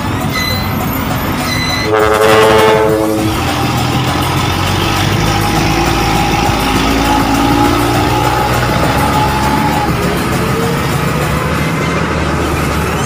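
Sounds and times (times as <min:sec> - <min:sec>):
road noise: 0:00.0 - 0:13.0
truck engine: 0:00.0 - 0:13.0
truck air horn blast: 0:01.5 - 0:03.6.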